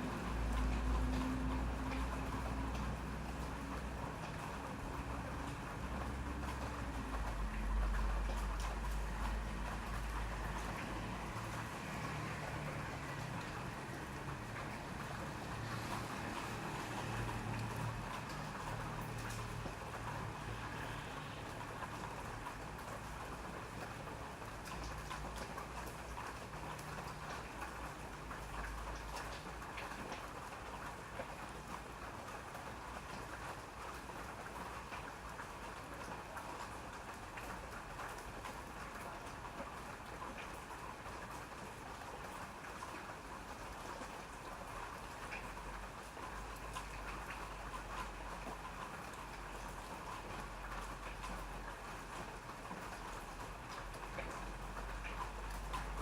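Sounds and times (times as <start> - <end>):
rain drops ticking on hard surface: 0.0 - 56.0.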